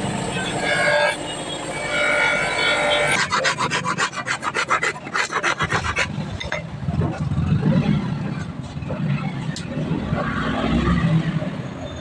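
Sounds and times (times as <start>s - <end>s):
hand tool scraping metal: 1.9s - 6.6s.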